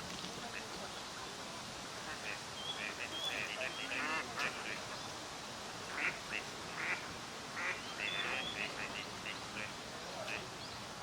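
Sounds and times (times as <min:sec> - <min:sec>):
ducks calling: 0:02.1 - 0:04.8, 0:05.9 - 0:09.7.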